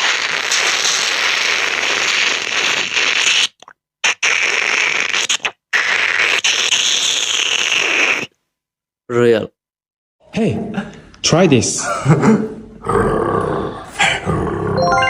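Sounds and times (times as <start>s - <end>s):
beatboxer hissing with mouth: 0.0s - 8.4s.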